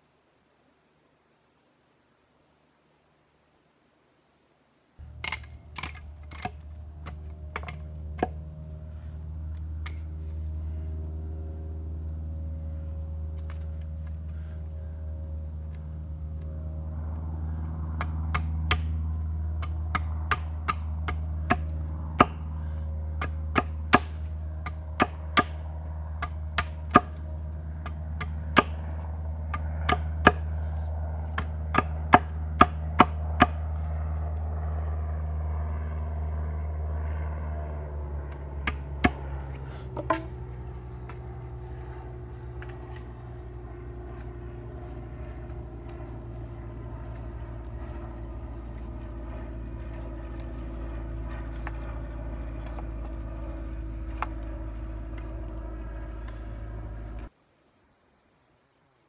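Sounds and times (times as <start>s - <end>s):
axe chopping wood: 5.0s - 8.4s, 18.0s - 19.0s, 19.6s - 22.5s, 23.1s - 27.2s, 27.8s - 28.9s, 29.5s - 30.5s, 31.3s - 33.7s, 38.6s - 39.2s, 39.9s - 40.4s
steady low rumble: 5.0s - 57.3s.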